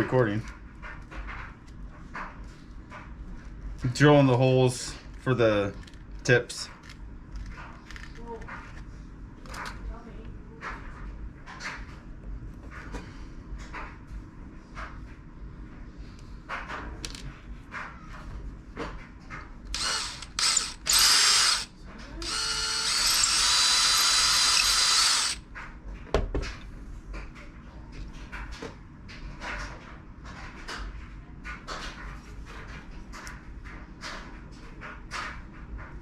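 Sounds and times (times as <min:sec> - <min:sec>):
power drill boring: 0:19.7 - 0:25.4.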